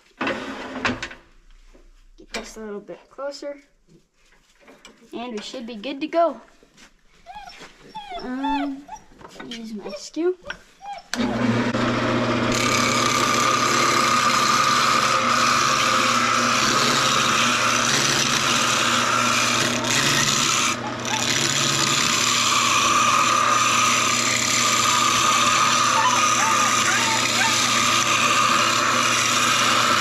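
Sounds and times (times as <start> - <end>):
lathe motor hum: 11.1 - 30.0.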